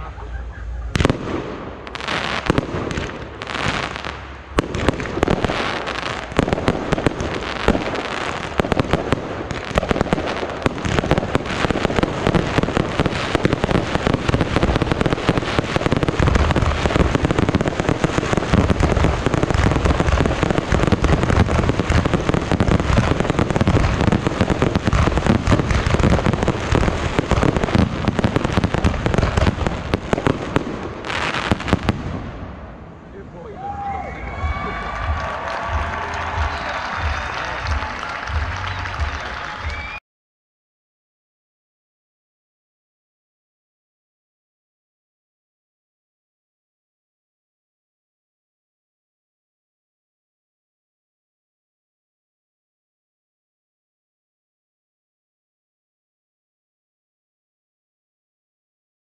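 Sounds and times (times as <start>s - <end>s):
fireworks bangs and crackling: 0.1s - 33.5s, 34.2s - 40.0s.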